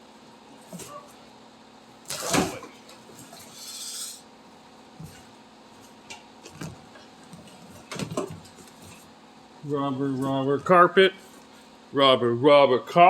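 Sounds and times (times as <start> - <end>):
rubber carpet rustling: 6.4 - 9.1.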